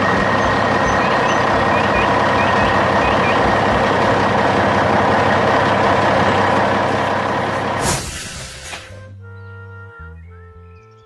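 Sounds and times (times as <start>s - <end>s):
heavy truck engine running: 0.0s - 10.7s
short air hiss: 7.8s - 9.0s.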